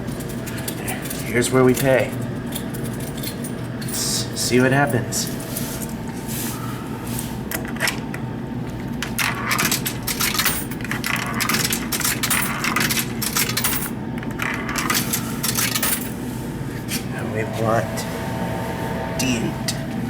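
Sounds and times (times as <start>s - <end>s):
coins clinking into vending machine: 0.1s - 5.0s, 9.2s - 16.2s.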